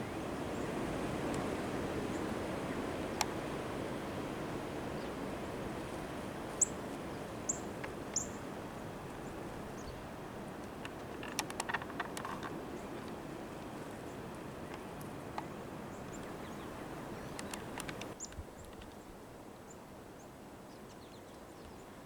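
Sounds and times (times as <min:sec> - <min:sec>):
outdoor background noise: 0:00.0 - 0:22.0
sharp clicks: 0:10.9 - 0:12.5, 0:17.3 - 0:18.4.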